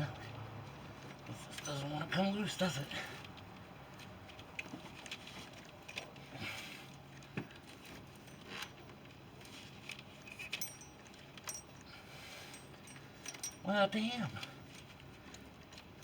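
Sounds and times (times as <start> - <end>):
metallic clicks and clinks: 1.1 - 2.1, 10.2 - 13.8.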